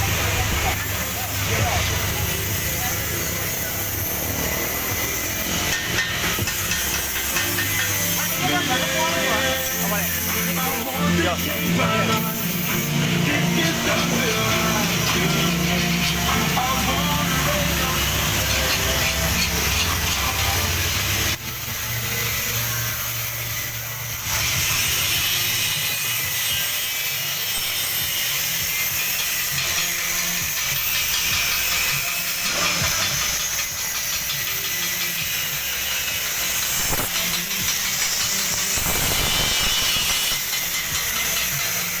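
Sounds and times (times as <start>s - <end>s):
loud hissing of metalwork: 0.0s - 42.0s.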